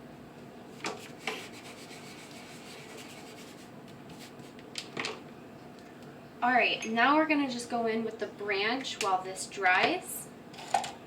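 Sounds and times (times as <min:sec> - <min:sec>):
paintbrush rubbing on paper: 0:01.0 - 0:04.6.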